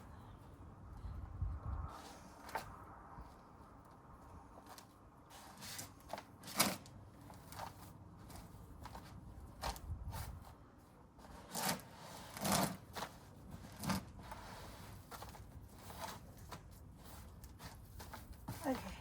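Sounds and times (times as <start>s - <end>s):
hands rummaging through soil: 11.2s - 19.0s.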